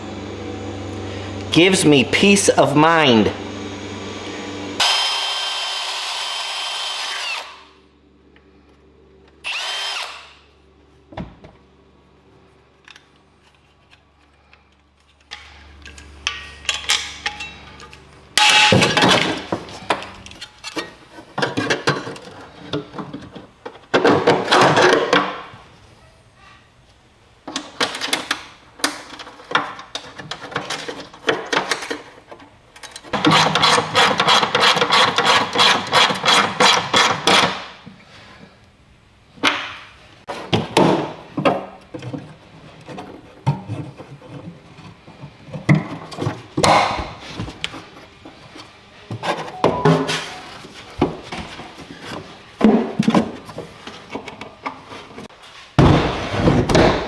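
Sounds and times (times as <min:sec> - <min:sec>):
power tool running in bursts: 0:00.0 - 0:07.7, 0:09.4 - 0:10.4.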